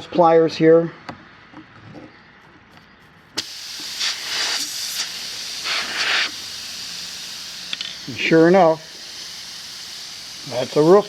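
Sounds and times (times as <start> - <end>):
air hissing from tire: 3.4 - 11.0.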